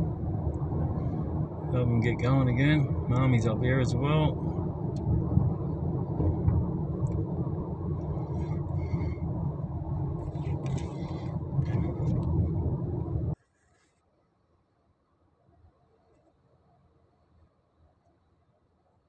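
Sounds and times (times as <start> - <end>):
car engine and tyres rumbling: 0.0 - 13.4.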